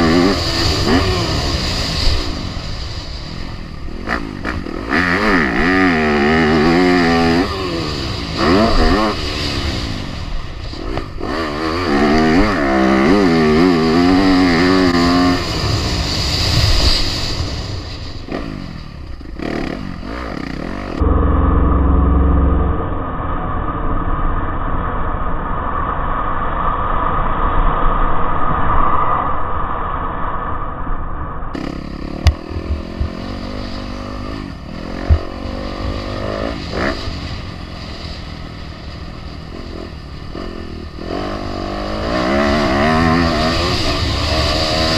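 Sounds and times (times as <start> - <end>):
dirt bike engines revving: 0.0 - 16.5, 18.2 - 23.0, 31.6 - 44.9.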